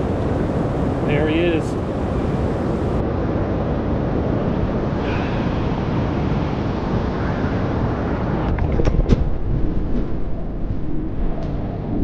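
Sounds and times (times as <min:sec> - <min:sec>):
river water rushing: 0:00.0 - 0:03.0
wind on microphone: 0:00.0 - 0:12.0.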